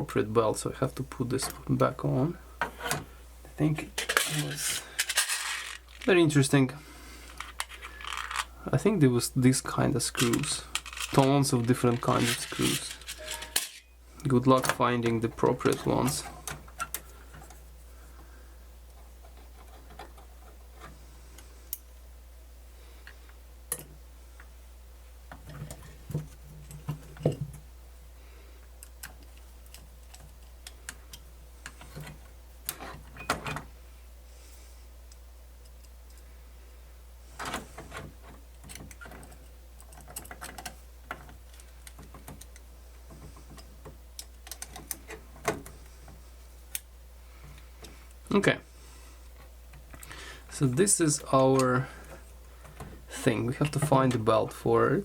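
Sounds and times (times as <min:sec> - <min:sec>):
steady low hum: 0:00.0 - 0:55.0
screws and metal parts clicking: 0:10.2 - 0:13.8.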